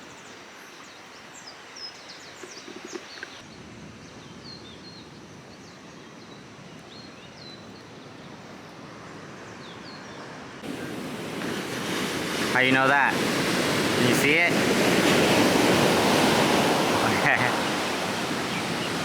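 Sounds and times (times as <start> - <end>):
small birds chirping: 0.0 - 8.4, 16.1 - 19.0
distant surf rushing: 10.2 - 19.0.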